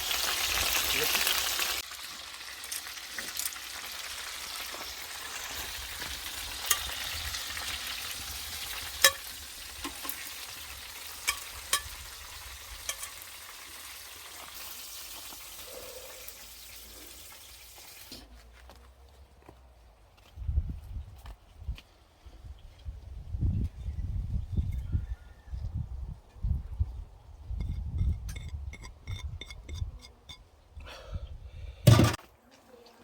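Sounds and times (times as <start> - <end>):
food sizzling in a frying pan: 0.0 - 18.1.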